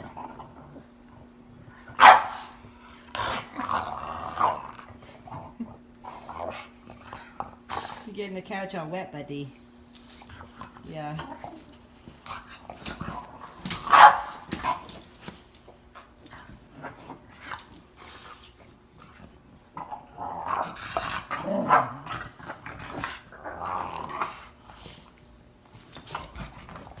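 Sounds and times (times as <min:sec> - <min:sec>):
dog grumbling and growling: 0:02.3 - 0:08.1, 0:10.4 - 0:14.9, 0:19.8 - 0:24.9.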